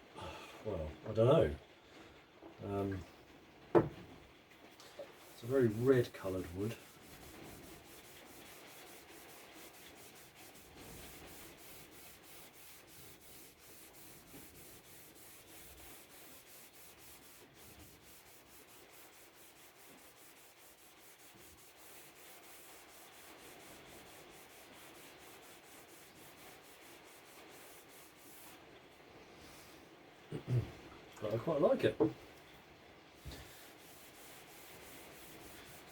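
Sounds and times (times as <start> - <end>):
rubbing strokes on wood veneer: 5.0 - 29.8, 33.2 - 35.9.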